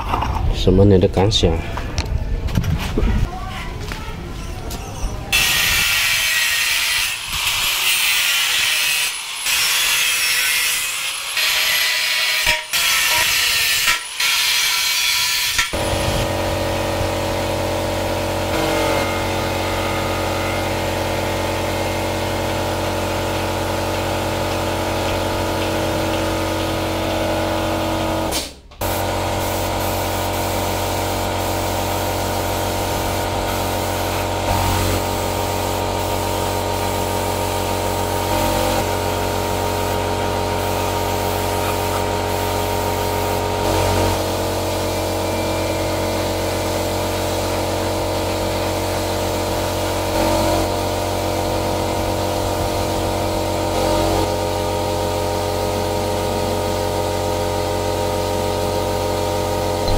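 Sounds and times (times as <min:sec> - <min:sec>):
steady machine hum: 0:15.8 - 0:59.9.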